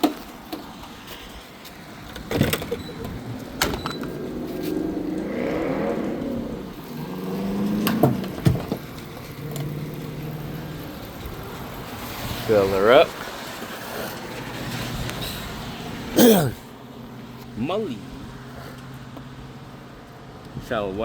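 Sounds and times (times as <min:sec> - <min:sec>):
vehicle passing: 0:03.0 - 0:12.4.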